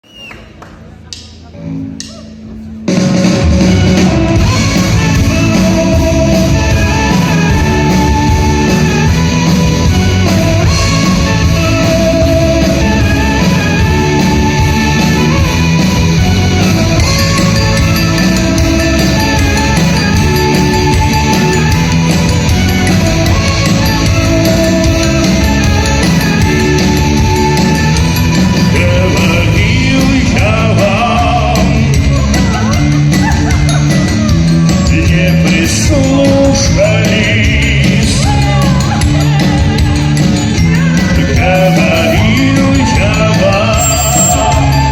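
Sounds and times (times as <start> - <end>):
heavy rock music: 2.7 - 44.9
person singing wavering notes: 34.0 - 44.9.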